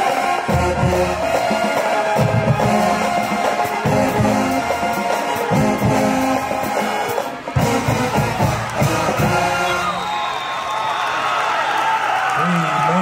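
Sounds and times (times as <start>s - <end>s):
brass horn music with beat: 0.0s - 10.0s.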